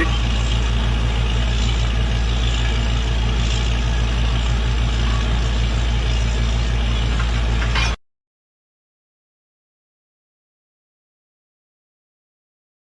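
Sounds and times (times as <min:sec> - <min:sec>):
drilling rig engine drone: 0:00.0 - 0:08.0.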